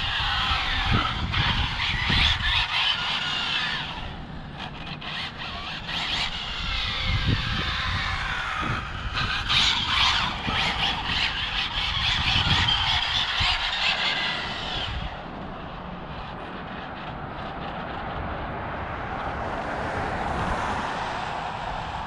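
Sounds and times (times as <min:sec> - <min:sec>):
tyres squealing on pavement: 0:00.0 - 0:16.0
electric motor whining: 0:00.0 - 0:17.1.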